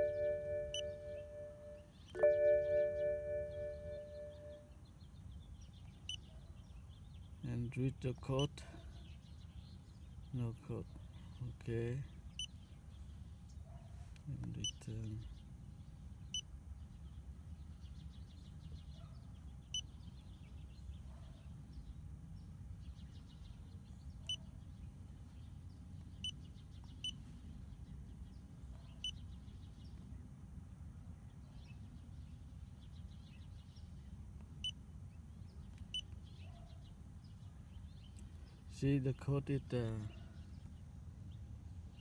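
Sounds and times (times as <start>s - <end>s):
scan tool beeps: 0.0s - 4.6s.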